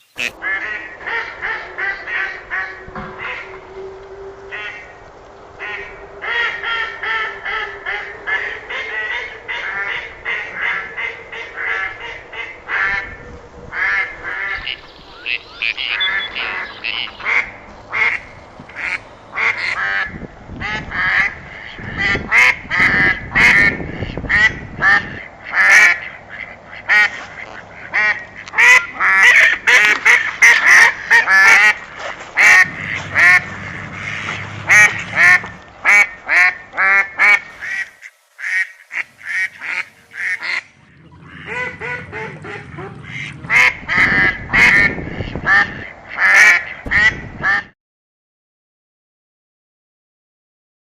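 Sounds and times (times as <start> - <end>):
geese honking: 0.0 - 3.7, 13.8 - 20.2, 32.4 - 47.6.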